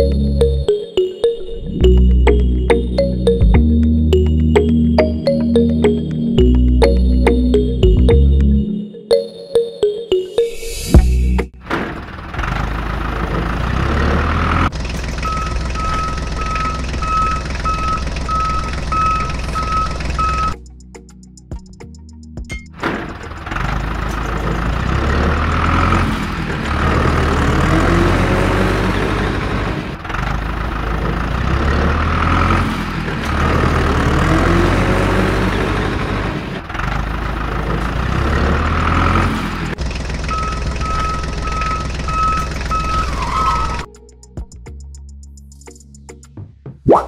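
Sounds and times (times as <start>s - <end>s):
truck engine running: 0.0s - 8.7s, 11.0s - 44.0s
reversing beeps: 15.2s - 20.6s, 40.2s - 43.9s.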